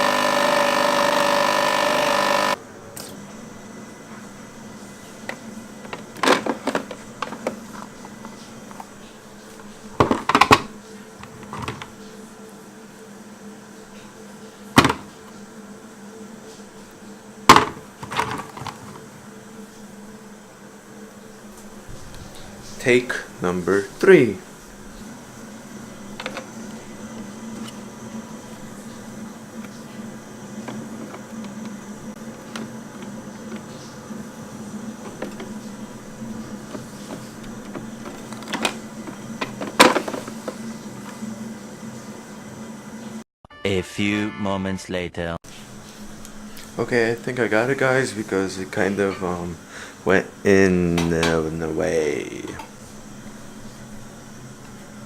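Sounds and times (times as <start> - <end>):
coffee machine clacks: 35.0 - 40.7.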